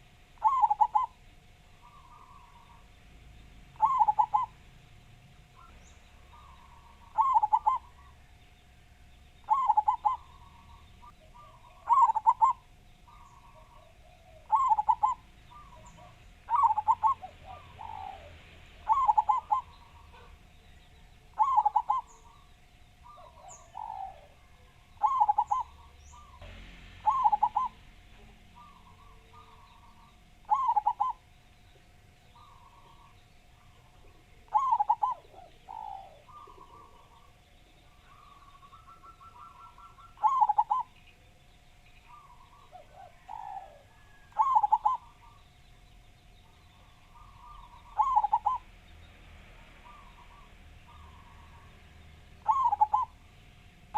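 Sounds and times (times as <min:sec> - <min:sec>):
dove cooing staccato: 0:00.0 - 0:01.2, 0:01.8 - 0:02.8, 0:03.8 - 0:04.6, 0:05.6 - 0:08.3, 0:09.4 - 0:20.5, 0:21.3 - 0:22.4, 0:23.0 - 0:26.4, 0:27.0 - 0:31.3, 0:32.4 - 0:37.4, 0:38.0 - 0:41.0, 0:42.1 - 0:45.4, 0:47.0 - 0:48.7, 0:49.8 - 0:51.8, 0:52.4 - 0:53.2
fainter bird call: 0:00.0 - 0:02.9, 0:03.8 - 0:04.6, 0:05.6 - 0:48.7, 0:49.8 - 0:53.2
faint steady hum: 0:00.0 - 0:53.9
small birds chirping: 0:00.0 - 0:53.9.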